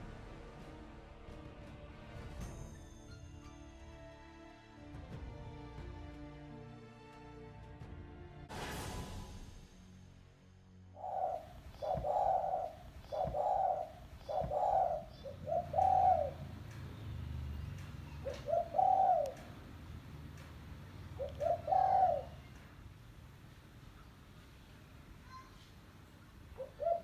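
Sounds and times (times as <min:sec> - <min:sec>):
dove cooing: 0:11.0 - 0:22.6, 0:26.5 - 0:27.0.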